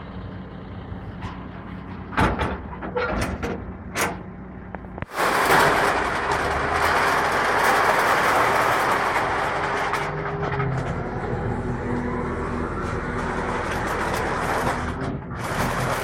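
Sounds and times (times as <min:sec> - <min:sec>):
collection truck running: 0:00.0 - 0:16.0
loud mechanical rush: 0:05.0 - 0:16.0
bins knocking and clattering: 0:05.1 - 0:11.1.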